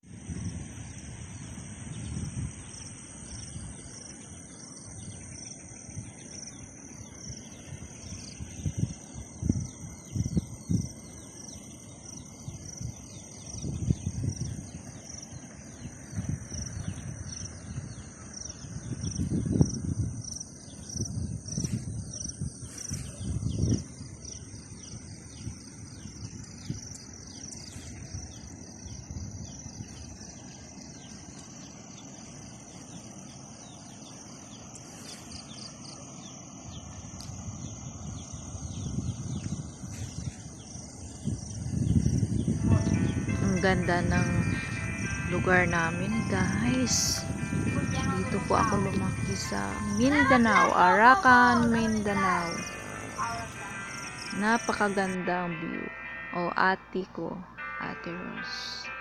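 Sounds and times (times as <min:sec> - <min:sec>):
insects trilling: 0:00.0 - 0:59.0
pulsing insect call: 0:00.0 - 0:59.0
low rumbles: 0:35.6 - 0:59.0.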